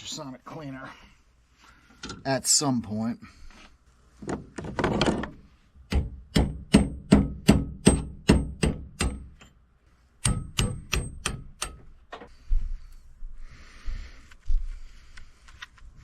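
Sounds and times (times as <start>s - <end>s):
hammer blows on metal: 5.9s - 9.4s.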